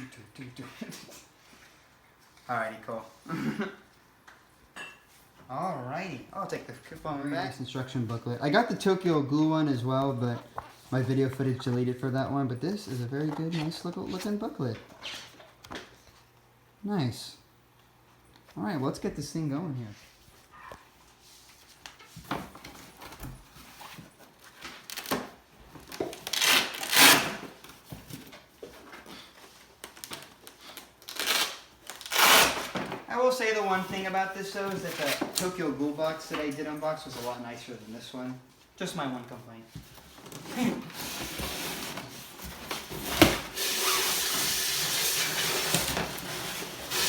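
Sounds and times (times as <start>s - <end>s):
cardboard rustling and scraping: 9.8s - 15.4s, 39.8s - 47.0s.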